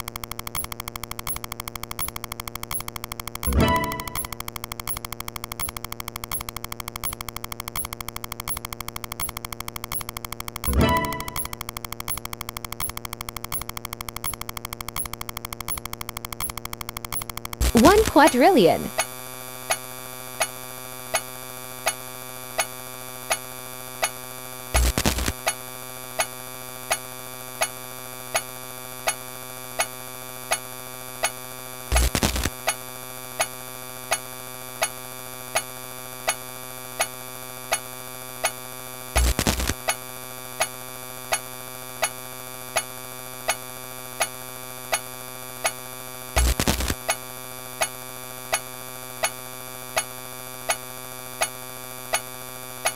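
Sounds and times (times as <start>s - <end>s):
sharp clicks: 0.0s - 18.7s, 24.8s - 25.6s, 39.2s - 40.0s, 46.4s - 47.2s
electronic buzzing drone: 24.8s - 25.4s, 39.2s - 39.9s, 46.1s - 47.1s.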